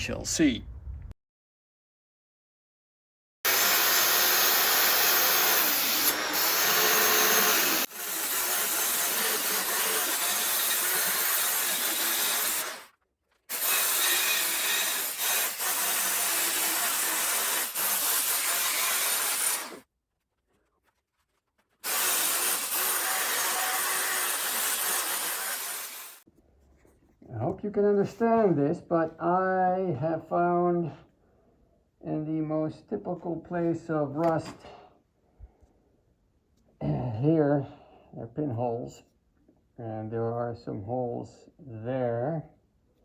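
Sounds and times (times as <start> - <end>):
power tool grinding steel: 3.5 - 12.9, 13.5 - 19.9, 21.8 - 26.2.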